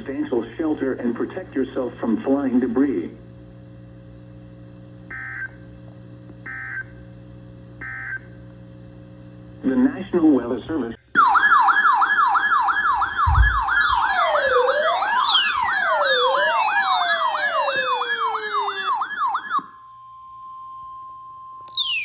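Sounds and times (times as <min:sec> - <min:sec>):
electronic siren yelping: 0:11.2 - 0:20.0, 0:21.7 - 0:22.0
wailing siren: 0:11.2 - 0:22.0
steady alert tone: 0:13.3 - 0:19.0, 0:21.7 - 0:22.0.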